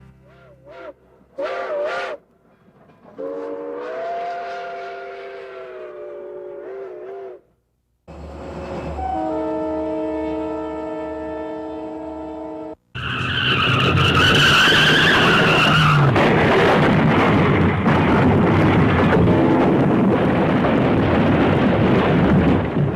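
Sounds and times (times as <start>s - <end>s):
multi-note train chord horn: 0.0s - 2.3s, 8.1s - 12.8s
train chord whistle: 0.1s - 2.3s, 3.1s - 7.5s, 8.1s - 12.8s.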